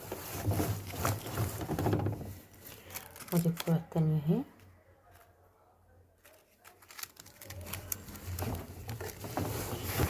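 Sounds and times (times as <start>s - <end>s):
cloth rustling: 0.0s - 3.4s, 6.2s - 10.0s.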